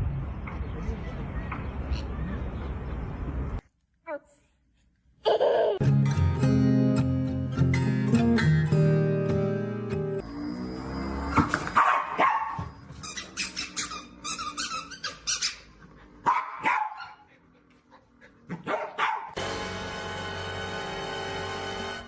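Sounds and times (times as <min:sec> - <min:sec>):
background music: 0:05.8 - 0:10.2
dog barking: 0:11.8 - 0:12.7, 0:16.2 - 0:17.2, 0:18.5 - 0:19.4.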